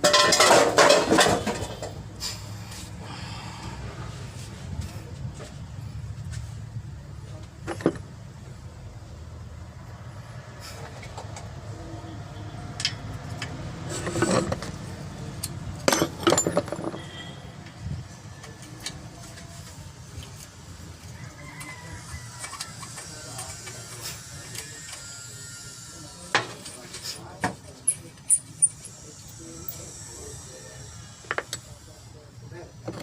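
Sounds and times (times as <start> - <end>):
metallic clinks and clanks: 12.8 - 17.2.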